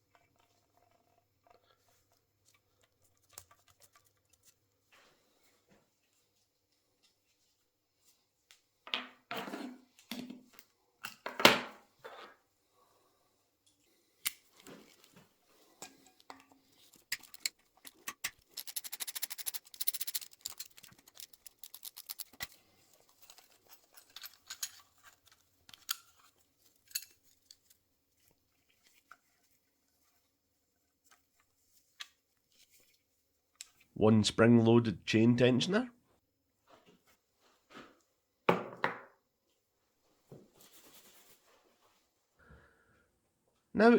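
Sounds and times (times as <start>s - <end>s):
metal tools clinking: 15.8s - 27.8s.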